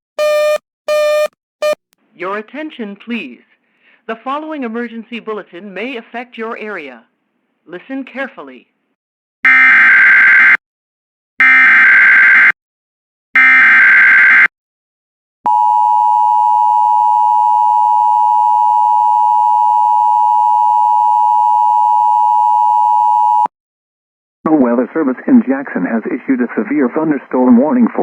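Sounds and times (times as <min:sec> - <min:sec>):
two-tone attention signal: 0:00.2 - 0:01.8.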